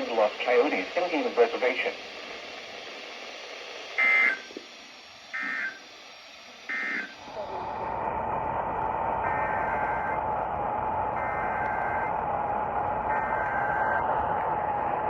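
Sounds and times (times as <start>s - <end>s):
radio hiss with faint tone: 0.0s - 15.0s
digital data tone bursts: 4.0s - 4.5s, 5.3s - 5.9s.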